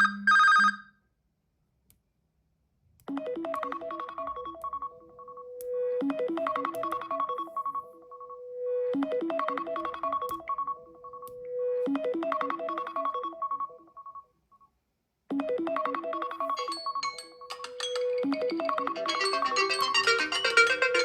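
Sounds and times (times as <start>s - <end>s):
phone ringtone melody: 3.1s - 14.2s, 15.4s - 21.0s.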